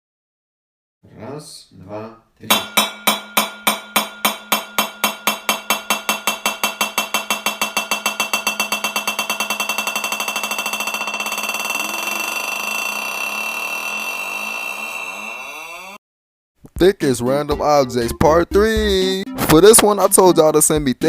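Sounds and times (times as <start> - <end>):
object spinning and rattling on surface: 4.7 - 14.8.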